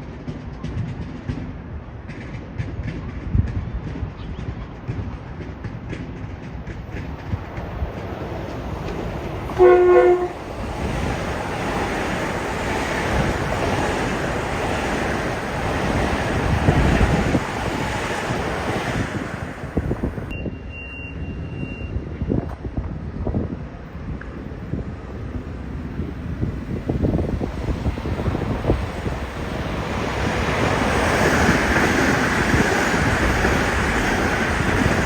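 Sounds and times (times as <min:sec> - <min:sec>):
train wheels rushing on rails: 0:00.0 - 0:20.3, 0:22.1 - 0:35.0
train horn blast: 0:09.5 - 0:10.5.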